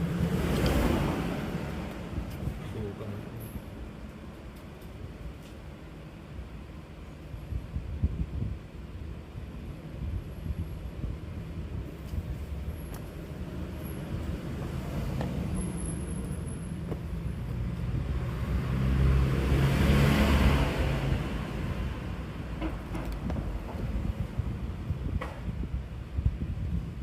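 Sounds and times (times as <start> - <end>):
vehicle passing on road: 0.0 - 6.3, 11.0 - 25.2.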